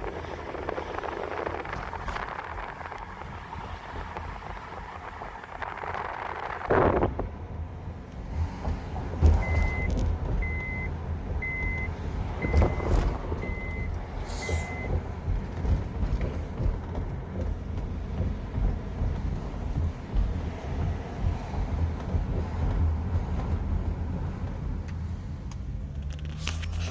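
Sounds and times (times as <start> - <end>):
suspension knocking on bumps: 0.0 - 25.2
car rumbling over rough road: 0.0 - 26.9
short high beep: 9.4 - 14.9.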